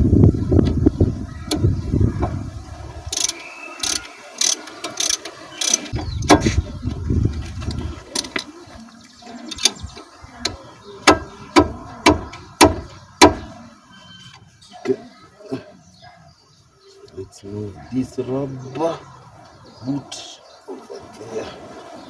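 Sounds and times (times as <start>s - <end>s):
low rumbling handling noise: 0.0s - 13.6s
metal tool clicks: 3.2s - 6.4s.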